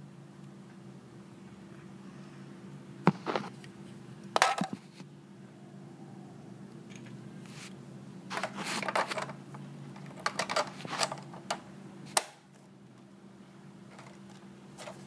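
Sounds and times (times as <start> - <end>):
steady low hum: 0.0 - 15.0
plastic parts clicking and clattering: 4.4 - 4.8, 8.3 - 12.3, 13.9 - 15.0.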